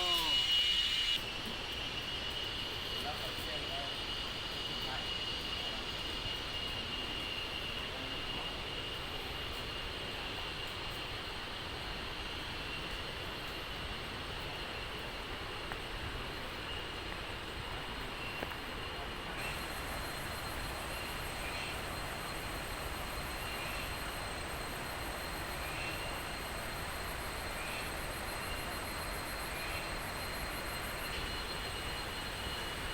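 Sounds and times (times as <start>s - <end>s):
insects trilling: 0.0s - 32.9s.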